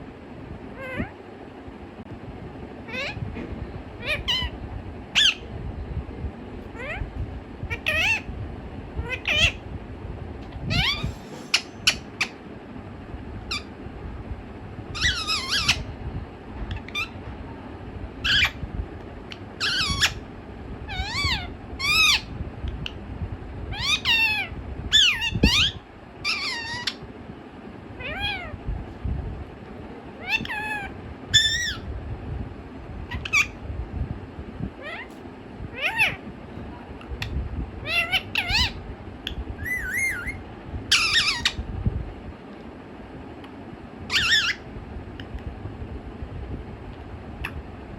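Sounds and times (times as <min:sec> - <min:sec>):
low background hum: 0:00.0 - 0:47.9
parakeet calls and talking: 0:00.7 - 0:01.2, 0:02.8 - 0:05.6, 0:06.6 - 0:08.3, 0:09.0 - 0:09.6, 0:10.4 - 0:12.4, 0:13.5 - 0:13.8, 0:14.9 - 0:16.0, 0:16.6 - 0:17.5, 0:18.2 - 0:18.6, 0:19.2 - 0:23.0, 0:23.7 - 0:27.1, 0:28.0 - 0:28.6, 0:30.0 - 0:31.9, 0:33.0 - 0:33.6, 0:34.7 - 0:41.7, 0:44.1 - 0:45.4, 0:47.4 - 0:47.7.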